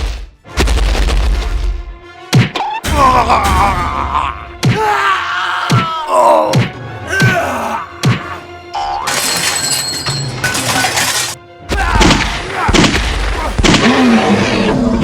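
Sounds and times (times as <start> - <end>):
background music: 0.0 - 15.0
crashing shattering noise: 9.1 - 11.4.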